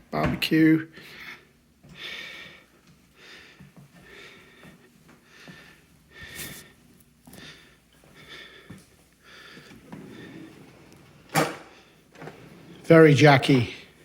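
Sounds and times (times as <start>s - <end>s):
breath puffs: 1.1s - 10.6s.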